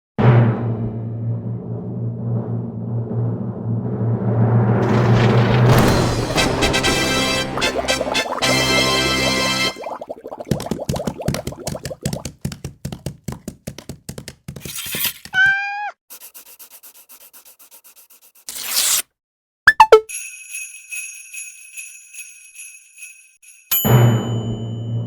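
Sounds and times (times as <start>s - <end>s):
whoosh: 2.5s - 7.1s
cartoon rapid clicking: 10.5s - 15.4s
sleigh bells jingling: 20.1s - 24.4s.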